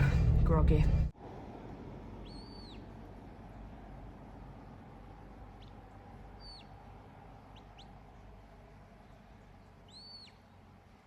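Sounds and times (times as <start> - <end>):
steady low rumble: 0.0 - 11.0
birds calling faintly: 2.1 - 11.0.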